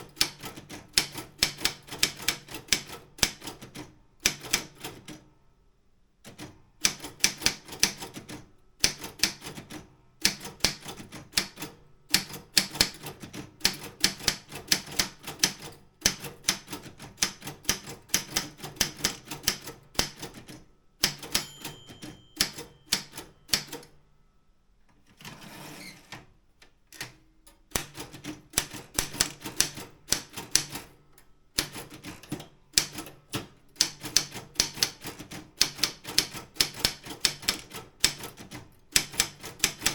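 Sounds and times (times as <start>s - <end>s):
typewriter key strikes: 6.8s - 23.9s, 31.6s - 39.9s
typewriter margin bell: 21.0s - 23.8s.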